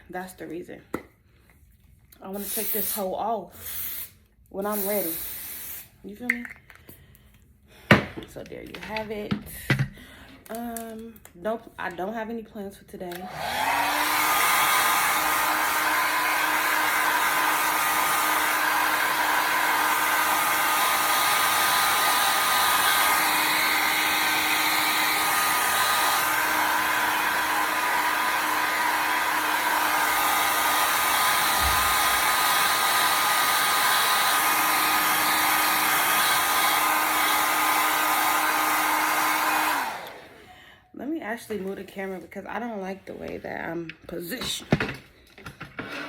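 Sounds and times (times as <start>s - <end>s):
hair dryer blowing: 2.3s - 6.0s, 13.1s - 40.6s.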